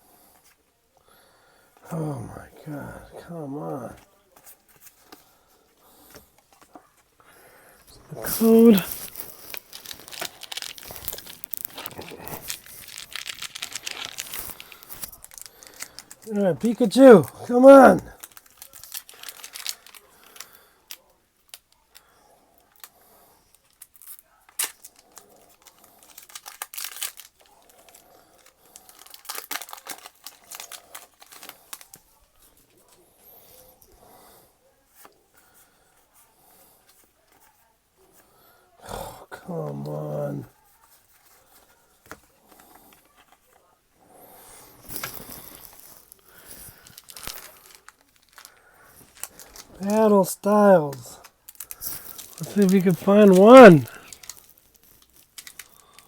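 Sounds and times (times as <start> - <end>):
cards and packs rustling: 2.2 - 22.0, 23.6 - 33.0, 44.3 - 56.0
foil wrappers crinkling: 7.3 - 22.1, 23.6 - 32.1, 44.5 - 56.0
foil wrapper ripping: 8.1 - 17.4, 18.2 - 20.6, 23.8 - 32.0, 44.8 - 56.0.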